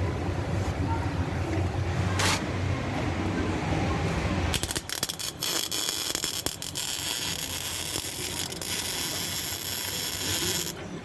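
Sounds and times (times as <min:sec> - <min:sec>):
arc welder crackling: 0:04.5 - 0:10.9.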